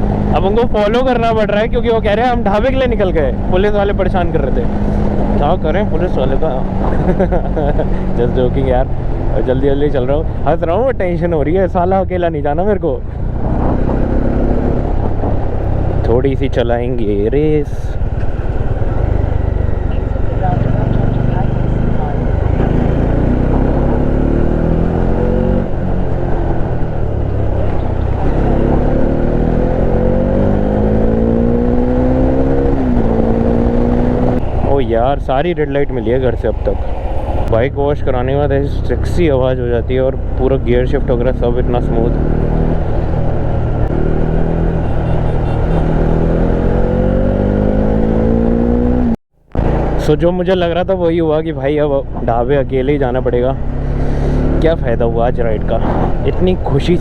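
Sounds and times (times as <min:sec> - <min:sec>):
motorcycle engine accelerating: 0:00.0 - 0:11.7, 0:12.9 - 0:51.3, 0:51.9 - 0:57.0
motorcycle engine running: 0:13.2 - 0:35.2.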